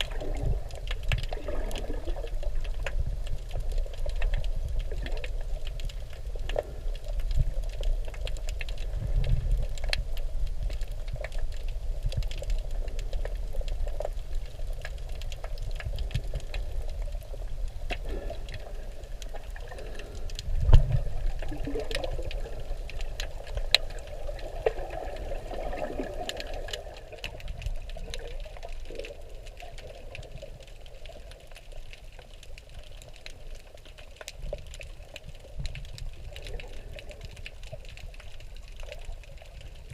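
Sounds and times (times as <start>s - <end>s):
muffled underwater gurgling: 0.0s - 32.1s
small crackling clicks: 0.0s - 39.9s.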